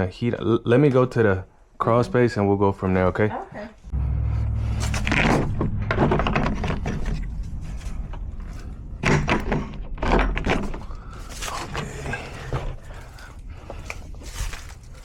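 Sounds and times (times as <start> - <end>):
knocks and thumps: 4.8 - 11.0
rustling: 10.5 - 15.0.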